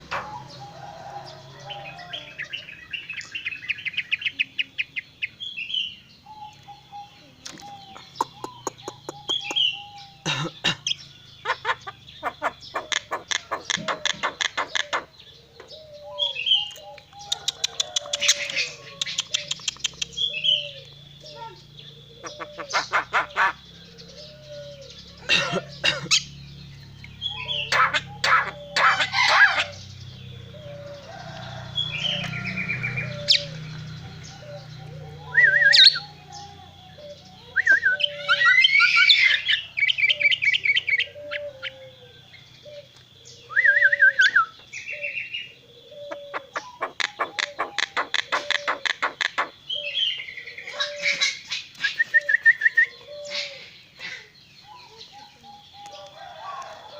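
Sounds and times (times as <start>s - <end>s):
bird whistled chirps and chattering: 2.6s - 30.5s, 31.9s - 41.8s, 43.5s - 45.4s, 46.0s - 55.4s
bird harsh rasping clicks: 16.7s - 21.0s.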